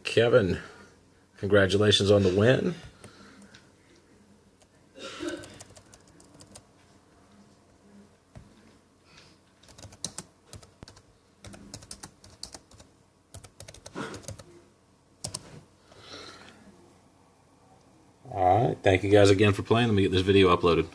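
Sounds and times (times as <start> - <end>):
computer keyboard typing: 5.3 - 6.7, 9.6 - 14.5, 15.2 - 15.5.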